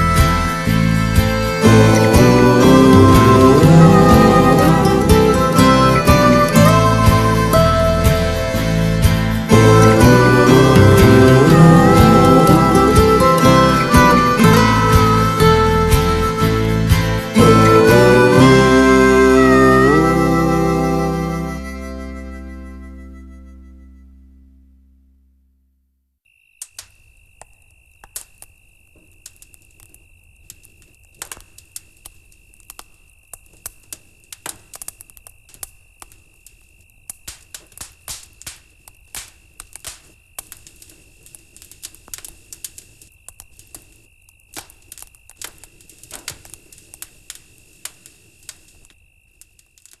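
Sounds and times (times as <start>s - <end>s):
bonfire crackling: 0.0s - 23.3s, 26.3s - 50.0s
steady high-pitched tone: 1.6s - 8.9s, 9.5s - 16.5s.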